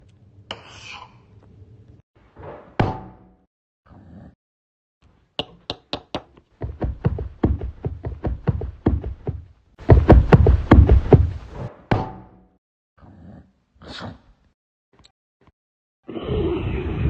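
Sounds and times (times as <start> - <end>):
sharp knocks: 5.4 - 12.4.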